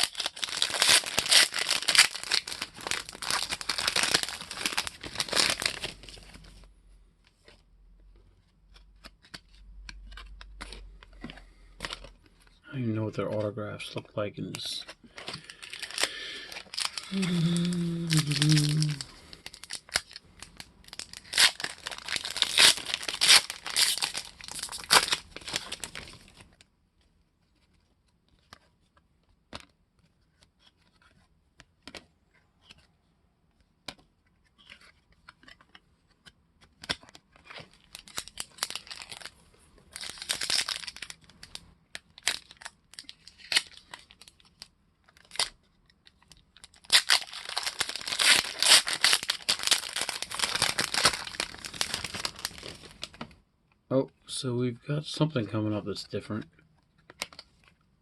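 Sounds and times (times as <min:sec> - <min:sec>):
card pack wrappers tearing: 0:00.0 - 0:06.4, 0:14.4 - 0:26.4, 0:36.8 - 0:39.3, 0:39.9 - 0:53.3.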